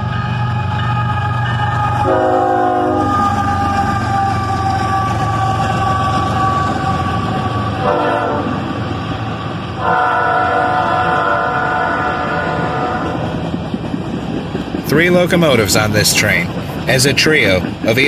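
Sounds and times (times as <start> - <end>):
diesel locomotive engines rumbling: 0.0 - 18.0
locomotive air horn blasts: 2.0 - 8.6, 9.8 - 13.2.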